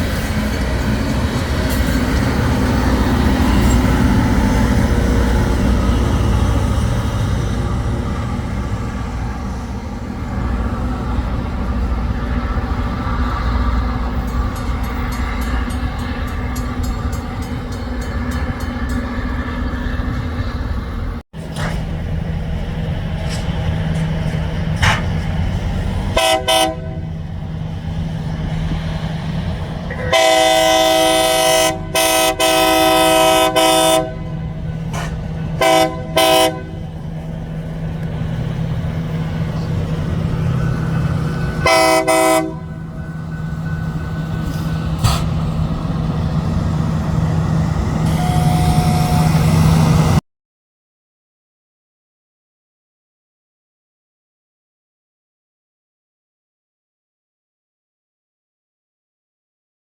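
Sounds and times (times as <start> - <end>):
diesel engine drone: 18.9 - 50.2
locomotive air horn blasts: 26.2 - 27.2, 29.9 - 34.6, 35.6 - 36.9, 41.5 - 43.0, 48.0 - 49.8.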